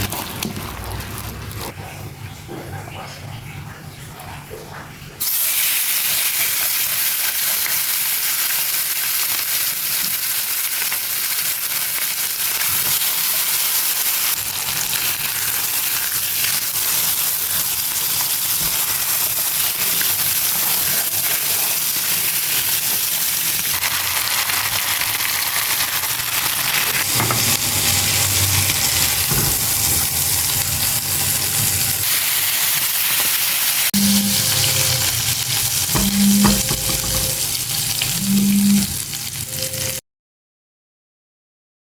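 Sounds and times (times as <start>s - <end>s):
chicken sizzling in a grill pan: 5.2s - 39.6s.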